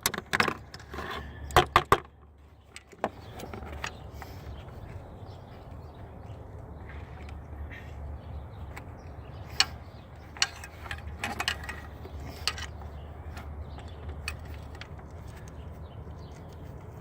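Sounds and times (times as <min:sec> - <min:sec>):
hand tools clicking on metal: 0:09.5 - 0:15.6.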